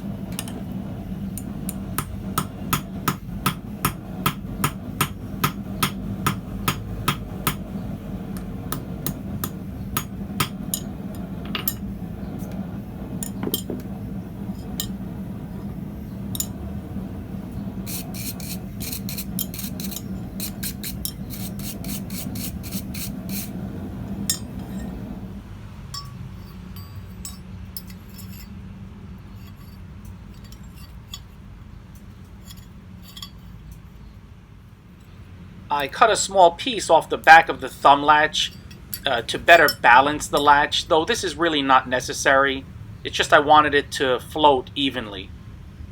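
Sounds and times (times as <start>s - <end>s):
steady low hum: 0.0s - 33.4s
hammer striking steel on anvil: 1.4s - 7.7s, 8.3s - 11.9s, 13.2s - 13.9s, 16.4s - 16.6s, 24.3s - 25.0s, 25.9s - 28.5s.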